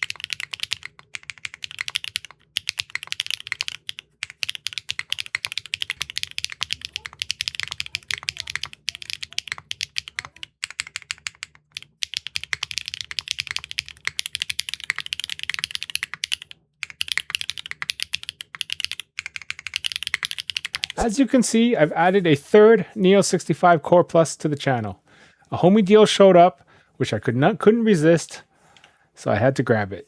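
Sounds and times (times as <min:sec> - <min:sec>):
fast typing on mechanical keyboard: 0:00.0 - 0:21.1.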